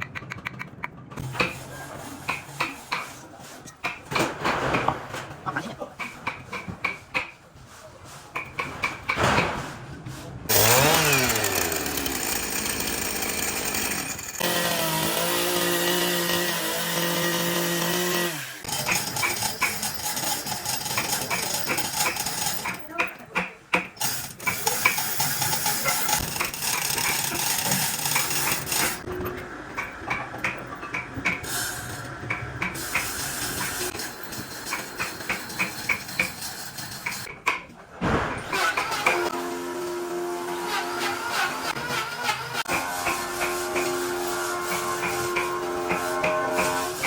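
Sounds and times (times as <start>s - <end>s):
power tool motor: 10.5s - 18.7s
noisy wood cutting: 10.5s - 19.8s, 38.4s - 47.0s.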